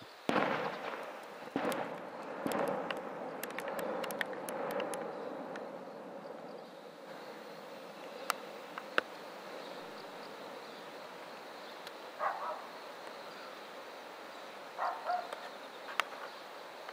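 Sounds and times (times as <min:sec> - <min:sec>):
faint steady hiss: 0:00.0 - 0:16.9
sharp clicks: 0:01.0 - 0:05.7.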